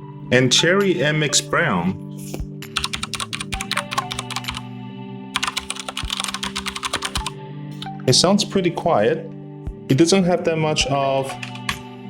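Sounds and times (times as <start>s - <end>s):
background music with steady tones: 0.0s - 12.0s
typing on mechanical keyboard: 2.7s - 4.6s, 5.4s - 7.3s.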